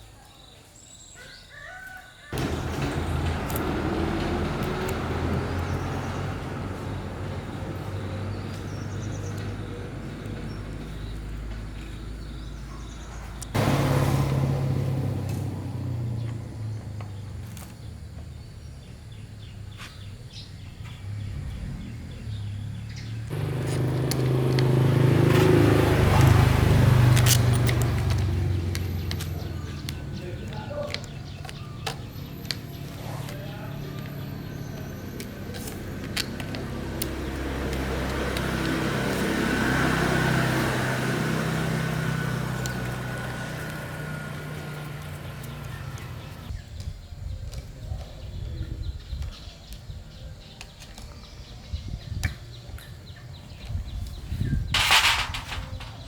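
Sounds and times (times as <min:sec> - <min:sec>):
small petrol engine running: 0:02.3 - 0:18.2, 0:22.3 - 0:46.5.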